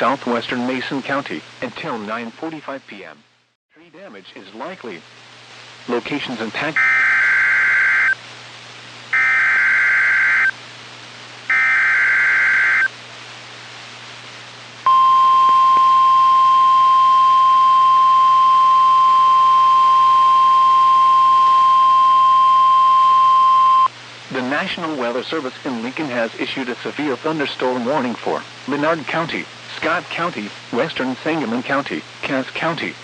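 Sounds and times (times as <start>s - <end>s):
steady alarm tone: 6.8s - 8.2s, 9.1s - 10.6s, 11.5s - 12.9s, 14.9s - 23.9s
harsh warbling data burst: 9.2s - 10.6s, 11.5s - 12.9s.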